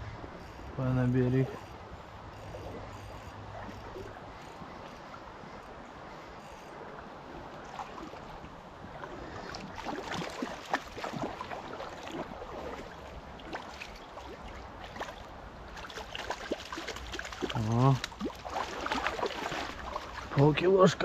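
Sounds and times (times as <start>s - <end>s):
stream water running: 0.0s - 21.0s
water splashing: 6.9s - 21.0s.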